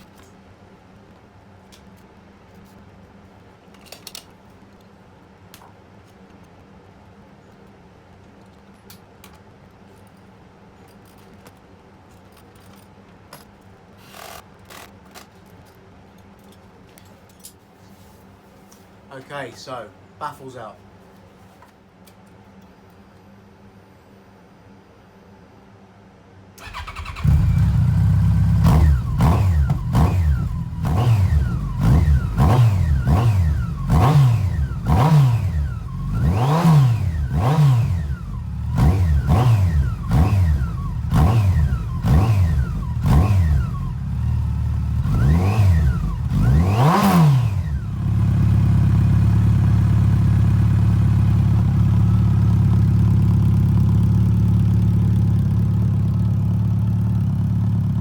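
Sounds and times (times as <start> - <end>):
motorcycle engine idling: 26.6 - 46.6, 47.6 - 58.0
motorcycle engine revving: 26.6 - 58.0.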